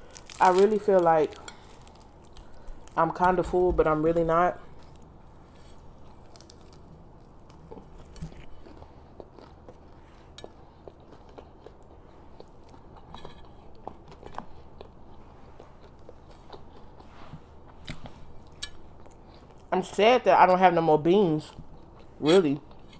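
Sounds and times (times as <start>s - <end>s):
chewing and crunching food: 0.0s - 19.8s, 21.0s - 22.9s.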